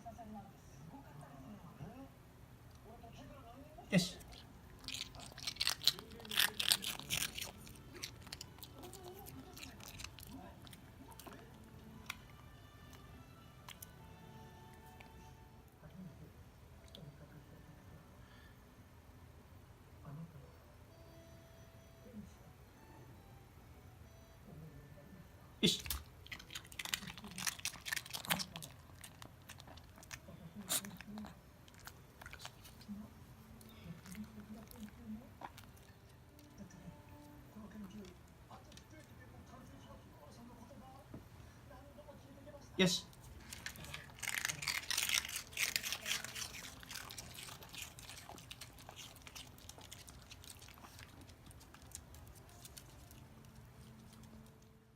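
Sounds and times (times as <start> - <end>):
dogs crunching hard treats: 4.3 - 12.3, 25.8 - 32.8, 43.4 - 54.7.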